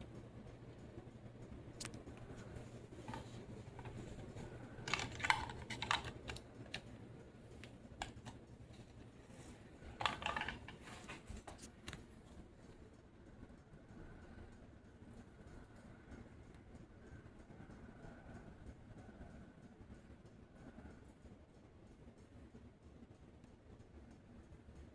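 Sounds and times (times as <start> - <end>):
ceiling fan humming: 0.0 - 24.9
quick clicking and rattling: 1.7 - 12.0.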